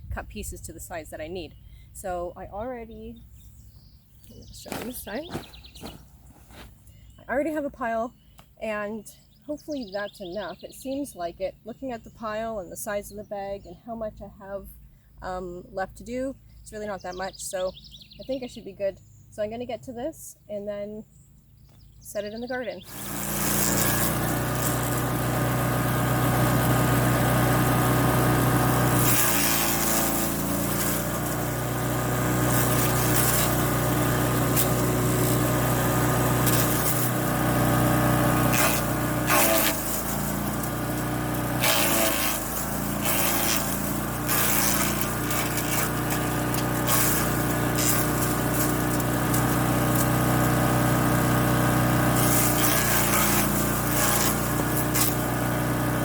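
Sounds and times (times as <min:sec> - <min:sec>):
wood chipper engine running: 0:04.2 - 0:06.8, 0:22.8 - 0:56.0
branches cracking and crunching: 0:04.6 - 0:06.8, 0:38.5 - 0:50.2.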